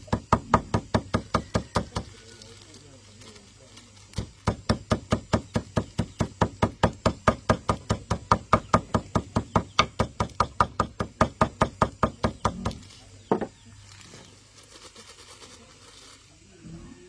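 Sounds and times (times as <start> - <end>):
rapid even knocking: 0.0 - 2.2, 4.2 - 13.5.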